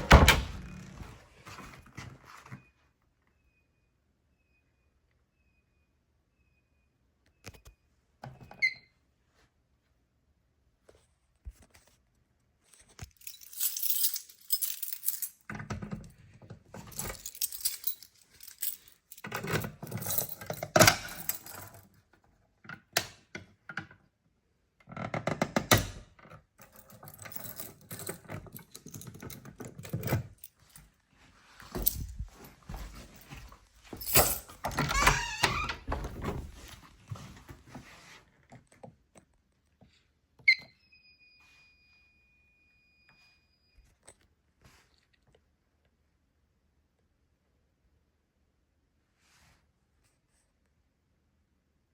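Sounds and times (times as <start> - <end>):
rattling rustling and knocks: 31.6 - 37.9.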